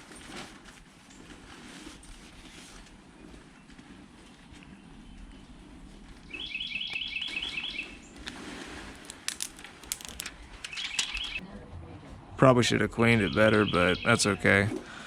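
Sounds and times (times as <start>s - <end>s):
small hard objects clicking: 9.0s - 11.4s.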